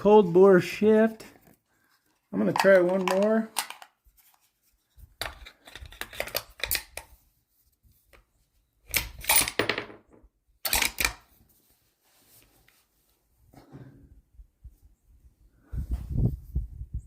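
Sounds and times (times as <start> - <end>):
rifle bolt metallic clacks: 10.6 - 11.2.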